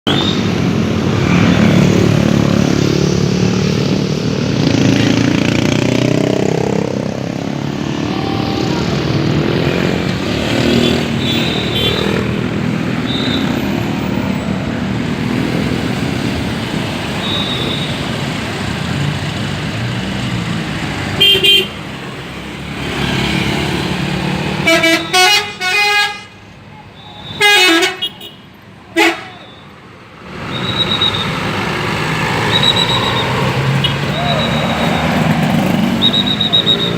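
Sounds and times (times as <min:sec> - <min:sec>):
multi-note bus horn: 0:24.6 - 0:26.4, 0:27.4 - 0:28.4, 0:29.0 - 0:29.4.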